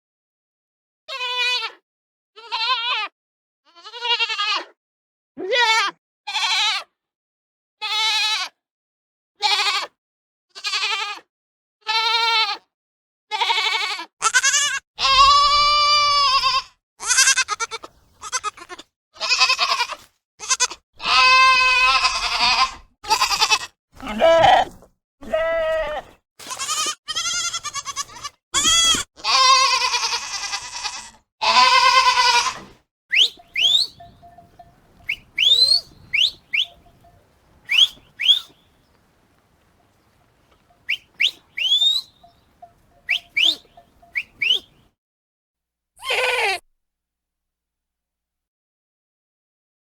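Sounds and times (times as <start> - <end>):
goats bleating: 3.7 - 4.7, 7.8 - 8.5, 9.4 - 9.9, 10.6 - 11.2, 11.9 - 12.6, 13.3 - 44.6, 46.0 - 46.6
short rising chirps: 33.1 - 38.6, 40.8 - 42.4.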